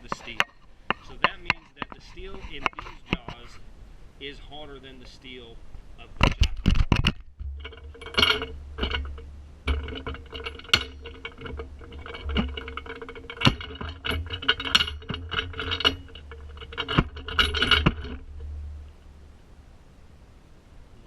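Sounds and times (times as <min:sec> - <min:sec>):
low rumble: 0:07.3 - 0:20.0.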